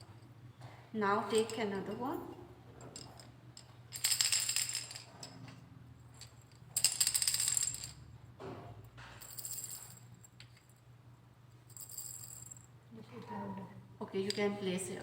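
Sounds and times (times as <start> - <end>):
sound cylinders rattling when shaken: 2.8 - 5.4.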